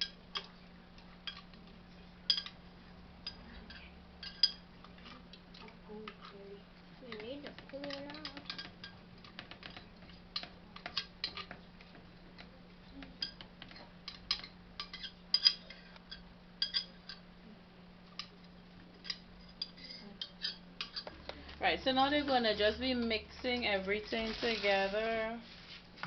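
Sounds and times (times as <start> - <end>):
faint steady hum: 0.0 - 26.0
kitchen things clicking and rattling: 7.0 - 17.2.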